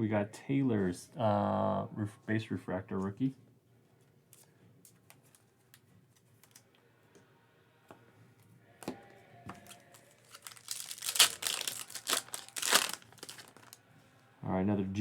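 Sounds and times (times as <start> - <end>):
foil wrapper tearing and crinkling: 9.6 - 13.8.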